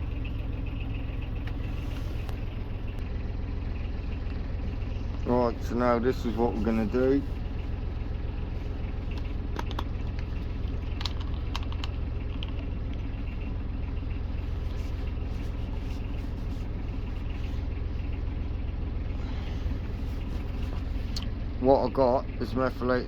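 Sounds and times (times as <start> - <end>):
steady low rumble: 0.0 - 23.0
small objects clicking and tapping: 9.1 - 10.2.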